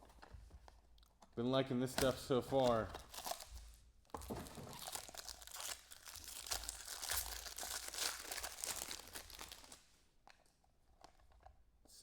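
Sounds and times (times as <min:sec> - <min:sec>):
plastic wrapping crinkling and tearing: 0:02.6 - 0:09.9.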